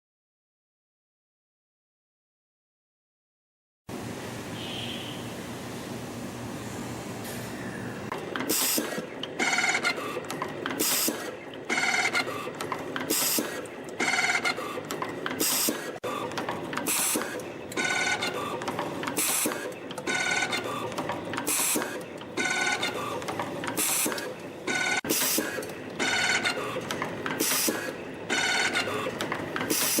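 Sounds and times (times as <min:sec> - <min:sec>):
spring coiling machine running: 0:08.1 - 0:30.0.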